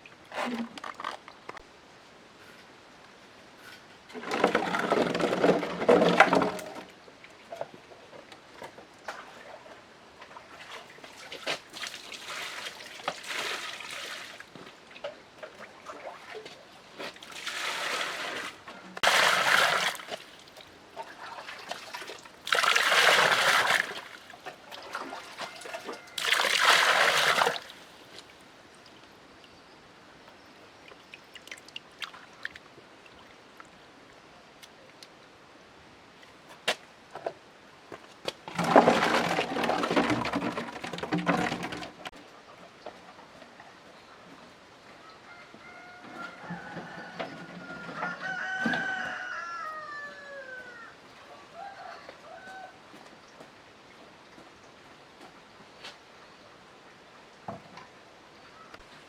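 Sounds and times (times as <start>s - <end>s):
water splashing and sloshing: 4.1s - 29.3s, 30.7s - 33.9s, 37.1s - 43.4s
water trickling: 30.7s - 33.8s.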